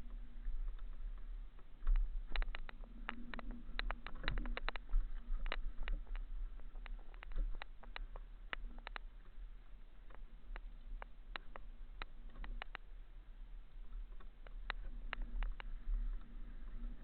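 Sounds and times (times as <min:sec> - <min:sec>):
bike clicks and rattles: 0:01.7 - 0:09.1.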